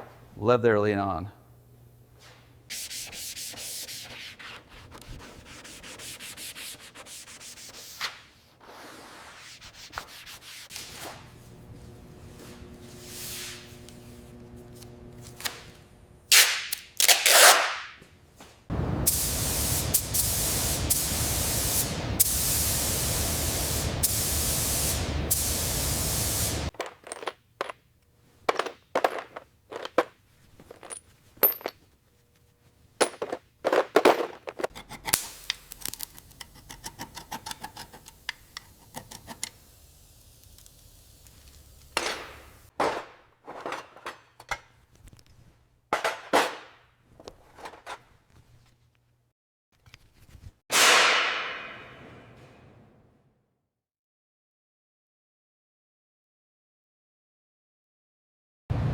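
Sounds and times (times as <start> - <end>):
loud rushing hiss: 18.8 - 26.7.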